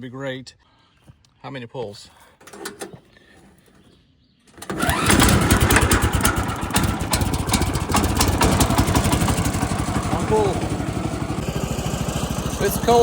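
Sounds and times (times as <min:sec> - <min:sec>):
engine pull-started and running: 0:02.4 - 0:03.9, 0:04.5 - 0:13.0.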